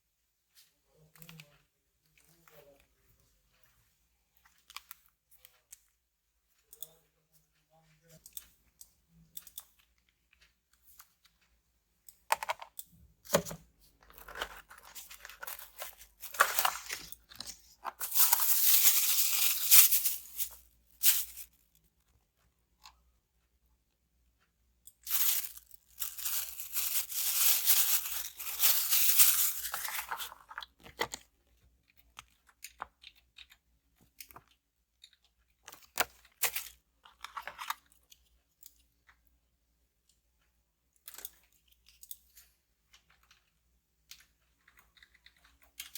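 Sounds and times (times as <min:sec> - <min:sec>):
handling clicks and rustles: 0:12.1 - 0:22.2, 0:25.0 - 0:31.2
plastic packaging tearing: 0:14.3 - 0:17.2, 0:17.9 - 0:21.4, 0:25.1 - 0:30.4.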